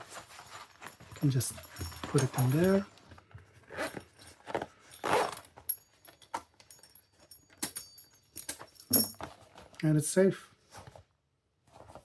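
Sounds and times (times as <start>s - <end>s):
bag rustling: 0.0s - 6.2s.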